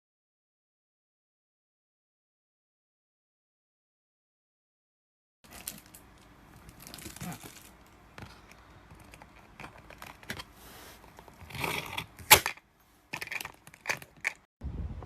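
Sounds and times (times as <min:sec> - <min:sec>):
suitcase handling clicks and rustles: 0:05.5 - 0:14.5.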